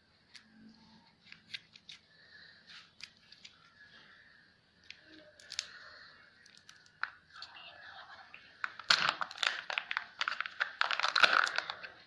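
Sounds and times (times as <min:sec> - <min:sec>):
packaging clicks and crinkles: 0:06.4 - 0:07.2, 0:08.6 - 0:12.0.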